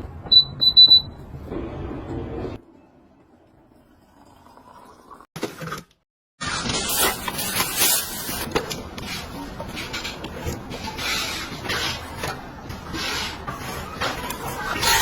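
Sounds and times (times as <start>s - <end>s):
rubbing and scraping objects: 6.4s - 15.0s.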